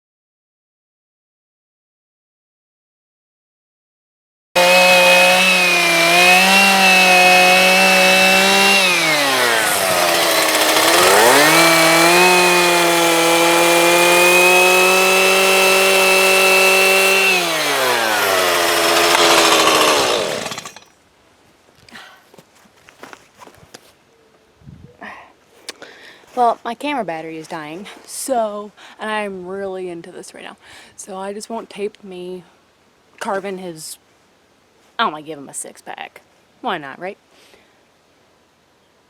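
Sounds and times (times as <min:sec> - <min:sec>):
chainsaw running at high revs: 0:04.6 - 0:20.9.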